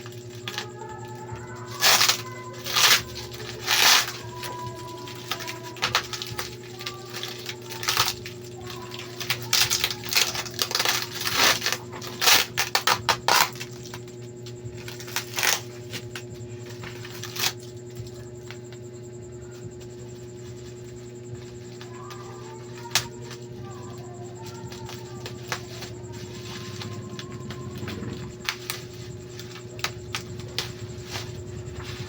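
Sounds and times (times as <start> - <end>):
packaging clicks and rustles: 0.0 - 14.1, 21.5 - 32.0
steady low hum: 0.0 - 32.0.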